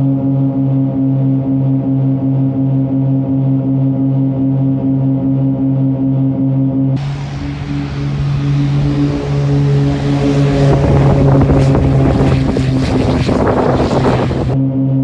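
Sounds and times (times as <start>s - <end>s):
air rushing over aircraft: 7.0s - 14.6s
piston aircraft engines droning: 7.0s - 14.6s.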